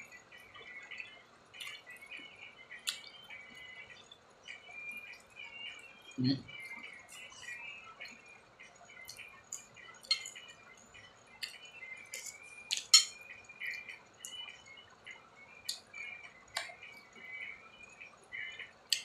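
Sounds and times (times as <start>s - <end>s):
bird chirping: 0.0s - 19.0s
wet chewing and smacking: 1.0s - 2.2s, 2.8s - 3.3s.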